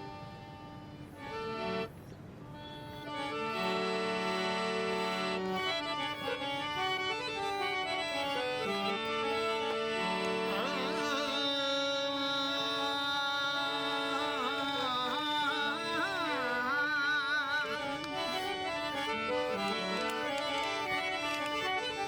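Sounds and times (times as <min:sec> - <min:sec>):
harmonium melody: 0:00.0 - 0:22.0
person singing with vibrato: 0:10.0 - 0:20.6.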